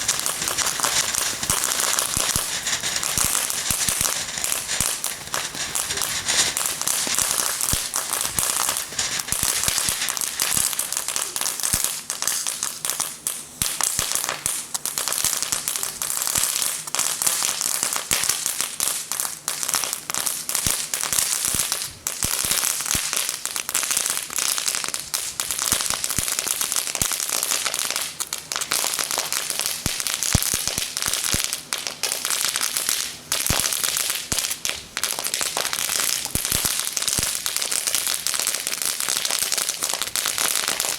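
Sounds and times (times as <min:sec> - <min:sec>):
firework fountains hissing: 0:00.0 - 0:17.9, 0:32.5 - 0:40.9
firecrackers popping: 0:00.0 - 0:40.9.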